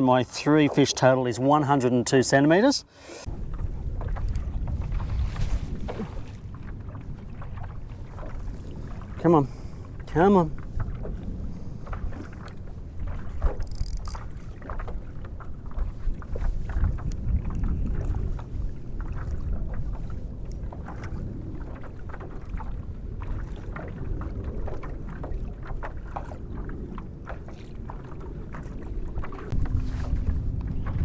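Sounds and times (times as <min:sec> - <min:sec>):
low rumble of water: 0:00.0 - 0:31.0
wind on microphone: 0:03.2 - 0:31.0
small clicks and knocks: 0:13.6 - 0:14.2.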